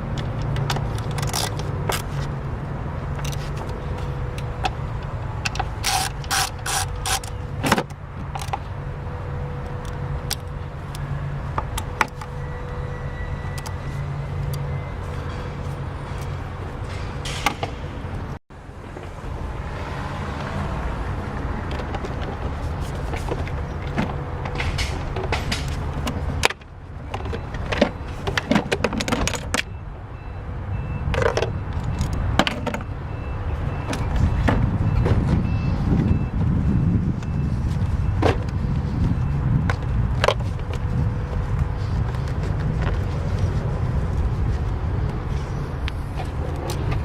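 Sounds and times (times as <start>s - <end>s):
faint pulsing beep: 32.8s - 38.2s.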